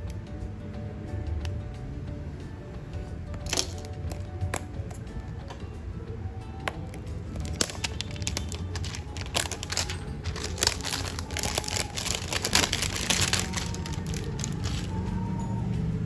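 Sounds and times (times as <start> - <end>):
plastic packaging crinkling: 3.5 - 4.3, 6.7 - 15.0.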